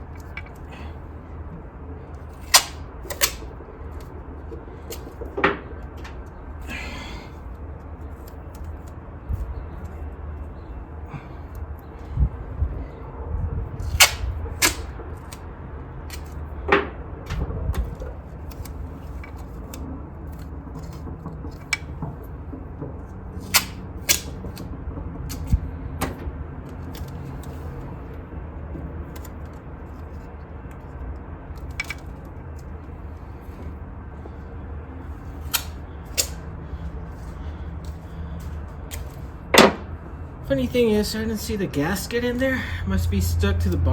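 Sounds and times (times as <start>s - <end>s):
hand tools and metal parts clanking: 0.0s - 1.0s, 2.2s - 7.1s, 13.8s - 15.3s
steady low hum: 0.0s - 43.9s.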